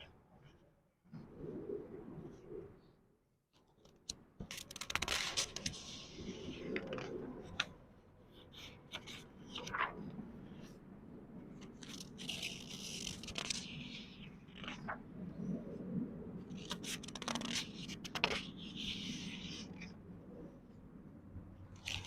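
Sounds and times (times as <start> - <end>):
book pages turning: 4.4 - 6.1, 11.6 - 14.9, 16.6 - 19.9, 21.8 - 22.0.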